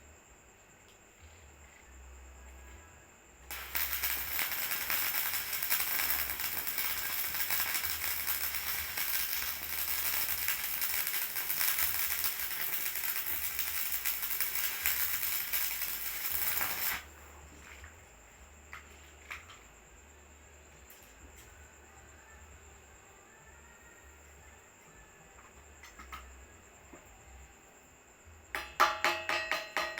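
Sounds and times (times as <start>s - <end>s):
arc welding crackle: 3.5s - 17.9s.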